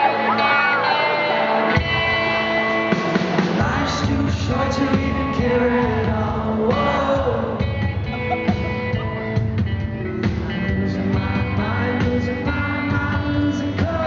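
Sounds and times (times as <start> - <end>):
strummed guitars: 0.0 - 14.0
bass and drums: 1.7 - 14.0
man singing: 3.5 - 8.2, 10.2 - 14.0.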